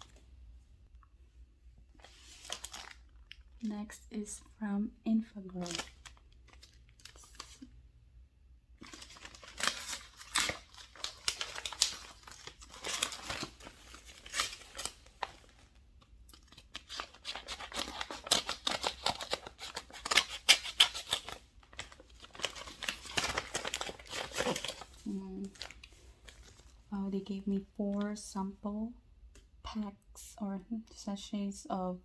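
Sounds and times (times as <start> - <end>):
paper and plastic packaging handling: 2.0 - 3.2, 5.3 - 7.8, 8.8 - 26.9.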